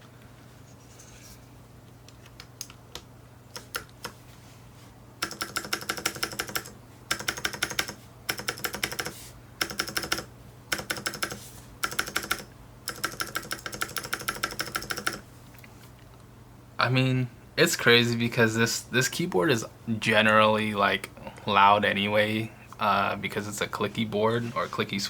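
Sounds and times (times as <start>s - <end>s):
clicky keyboard typing: 2.2s - 4.2s, 5.2s - 15.2s.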